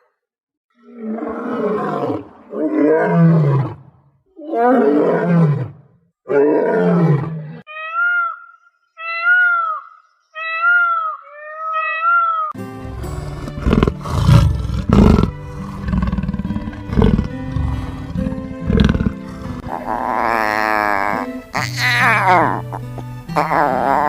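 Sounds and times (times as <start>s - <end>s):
large animal deep roars: 12.9s - 21.2s.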